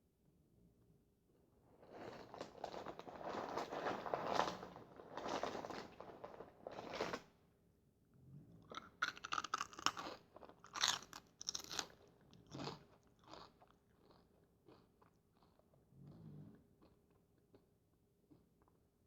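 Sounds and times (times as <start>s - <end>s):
corn chips crunching: 8.7s - 15.6s.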